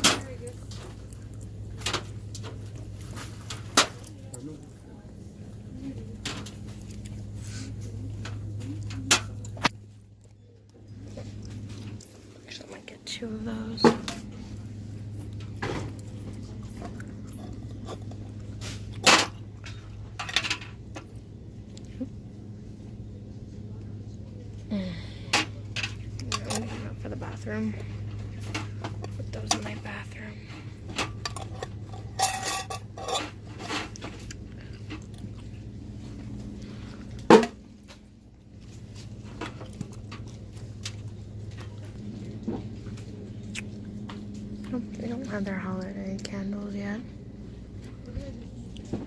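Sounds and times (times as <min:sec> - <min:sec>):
low electrical hum: 0:00.0 - 0:49.0
merchandise clinking and knocking: 0:30.8 - 0:34.3.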